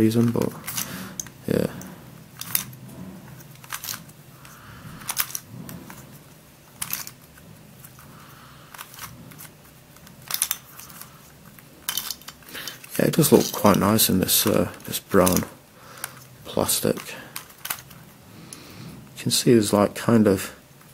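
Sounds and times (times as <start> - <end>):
plastic puzzle clicks: 0.1 - 6.1, 6.8 - 8.0, 8.6 - 11.2, 11.8 - 13.8, 14.4 - 16.2, 16.8 - 18.0.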